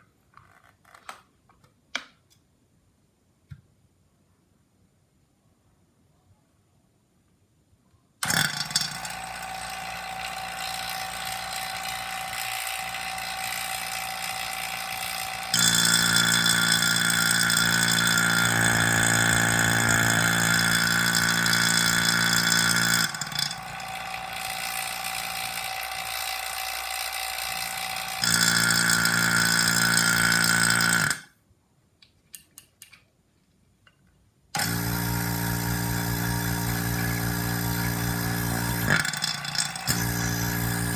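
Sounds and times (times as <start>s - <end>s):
vacuum pump humming: 8.2s - 31.2s, 34.6s - 40.9s.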